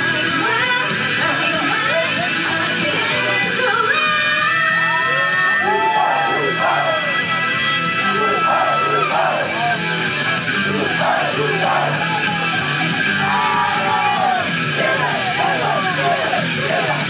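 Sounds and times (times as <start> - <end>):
person singing and yelling: 5.2 - 9.8, 10.6 - 17.0
live rock music: 7.5 - 17.0
repeating bass line: 10.6 - 17.0.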